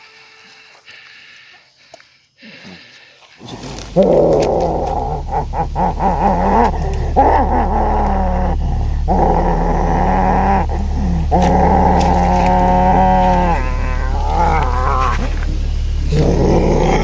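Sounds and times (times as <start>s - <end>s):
steady low hum: 0.0s - 17.0s
person growling cries: 3.4s - 17.0s.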